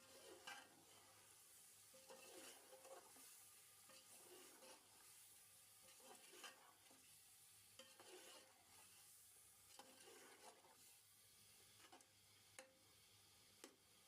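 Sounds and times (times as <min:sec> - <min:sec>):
spoon scraping a cooking pot: 0:00.0 - 0:01.2, 0:01.9 - 0:05.1, 0:05.8 - 0:07.1, 0:07.8 - 0:09.0, 0:09.7 - 0:10.8
faint sizzling hiss: 0:00.0 - 0:14.0.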